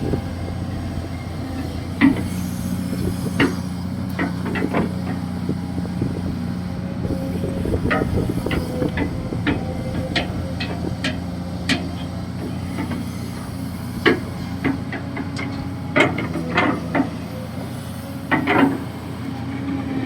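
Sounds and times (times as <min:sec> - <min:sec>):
hydraulic excavator running: 0:00.0 - 0:20.0
metallic clanks from excavator bucket: 0:01.1 - 0:05.3, 0:07.3 - 0:17.3, 0:18.3 - 0:19.0.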